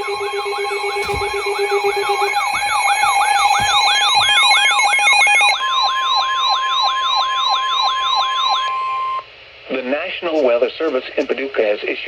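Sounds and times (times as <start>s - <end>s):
electronic sirens wailing: 0.0s - 9.3s
steady alarm tone: 0.0s - 9.3s.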